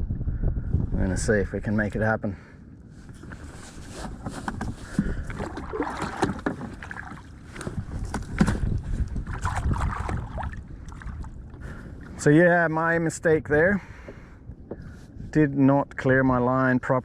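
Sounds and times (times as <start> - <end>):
low wind rumble: 0.0 - 17.0
water splashing against hull: 3.0 - 12.3.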